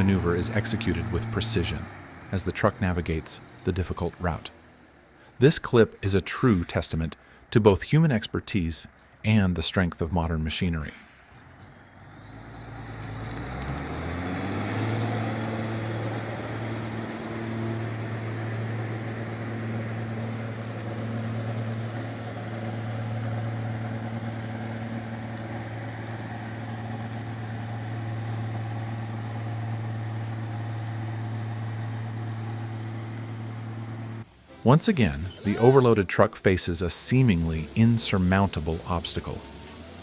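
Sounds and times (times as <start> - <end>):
diesel truck engine droning: 0.0 - 40.0.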